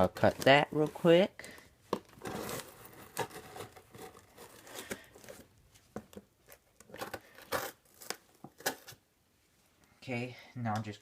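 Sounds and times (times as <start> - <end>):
packing tape tearing: 2.1 - 5.4.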